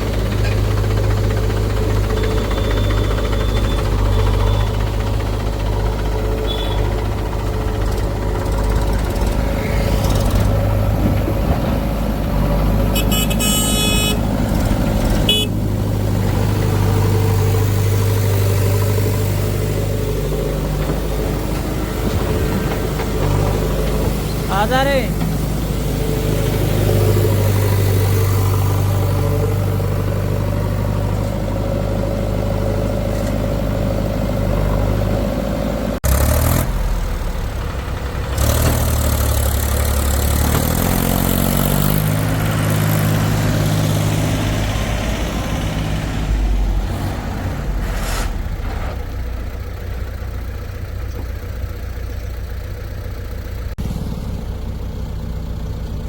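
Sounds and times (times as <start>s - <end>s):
heavy diesel machinery running: 0.0s - 56.0s
engine revving up: 36.0s - 37.4s, 38.2s - 49.0s.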